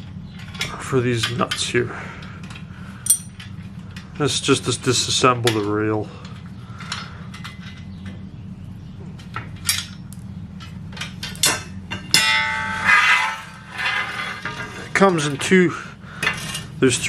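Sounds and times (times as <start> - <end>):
low steady hum: 0.0 - 17.0
ringing metal clank: 3.0 - 3.5, 11.0 - 15.0.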